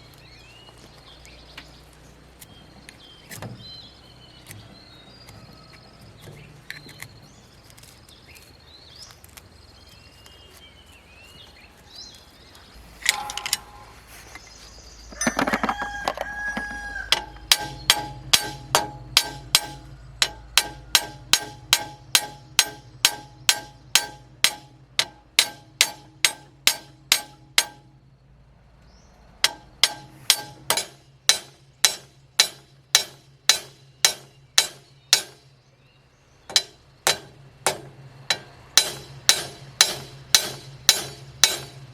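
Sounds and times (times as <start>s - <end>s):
small birds chirping: 0.0s - 41.9s
hammer striking metal: 13.0s - 14.1s, 15.2s - 28.0s, 29.4s - 35.5s, 36.5s - 41.9s
rooster crowing: 15.1s - 18.2s, 18.9s - 21.0s.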